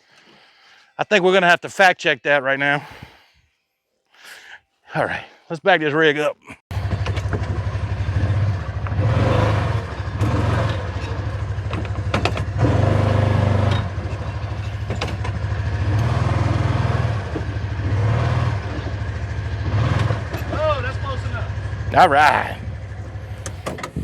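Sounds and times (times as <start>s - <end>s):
utility vehicle engine revving: 6.7s - 24.0s
sharp knocks: 8.3s - 19.0s.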